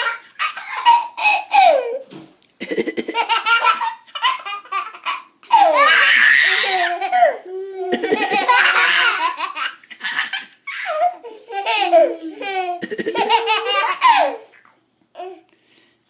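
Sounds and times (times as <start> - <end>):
fake coughing: 2.6 - 3.2, 12.7 - 13.3
young child laughing: 2.6 - 14.6.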